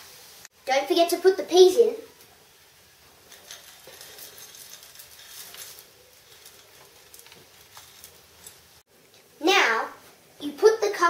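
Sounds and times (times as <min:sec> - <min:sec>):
food being stirred in a frying pan: 0:02.2 - 0:09.4.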